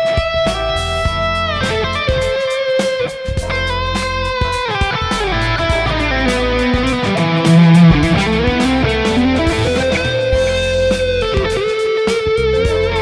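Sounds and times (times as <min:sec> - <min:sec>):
bass notes: 0:05.9 - 0:10.3
electric guitar lead notes: 0:06.4 - 0:10.2
sharp drum beats: 0:07.0 - 0:09.2.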